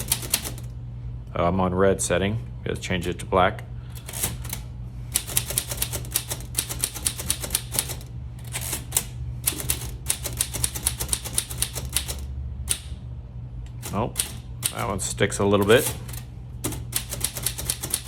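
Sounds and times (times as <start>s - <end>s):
manual typewriter keys clacking: 0.0s - 0.7s, 4.0s - 4.6s, 5.2s - 12.9s, 13.7s - 18.0s.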